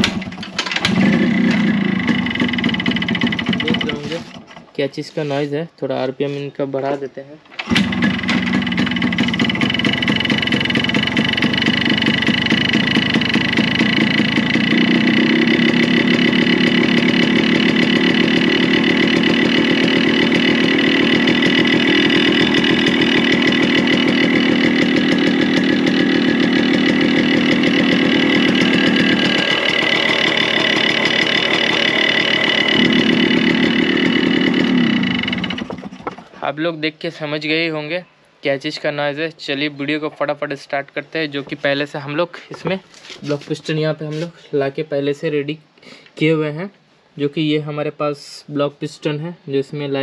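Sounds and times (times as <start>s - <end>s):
motorcycle engine revving: 0.0s - 4.7s, 7.6s - 36.3s.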